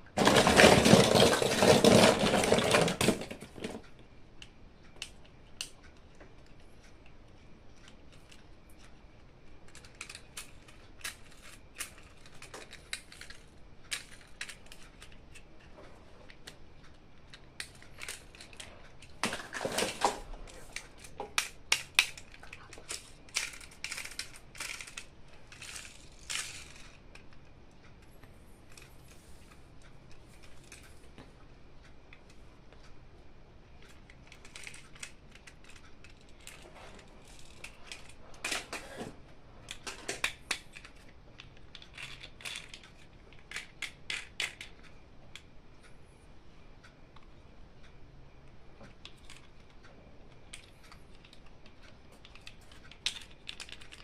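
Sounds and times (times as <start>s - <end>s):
toy packaging clicks and taps: 9.7s - 15.4s, 16.3s - 27.5s, 33.8s - 39.1s, 39.7s - 45.4s, 50.4s - 54.0s.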